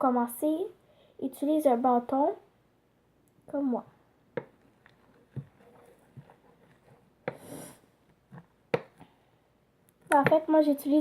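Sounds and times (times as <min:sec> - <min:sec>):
pencil clicking and tapping slime: 0:08.3 - 0:09.0.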